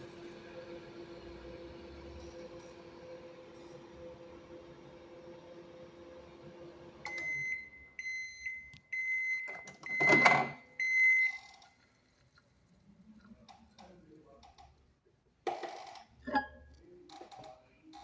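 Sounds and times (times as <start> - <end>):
microwave oven humming: 0.0 - 11.6.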